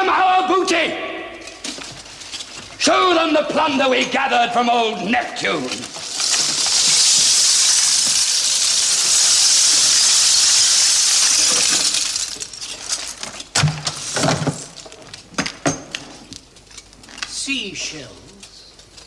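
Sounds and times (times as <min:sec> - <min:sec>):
seashells rattling onto floor: 0:05.4 - 0:17.4.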